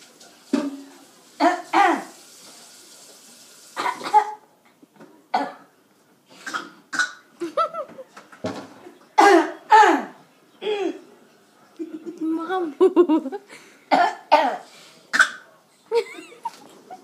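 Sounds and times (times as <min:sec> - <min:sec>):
small child fake coughing: 0:03.8 - 0:04.4, 0:09.2 - 0:10.2, 0:13.9 - 0:15.5.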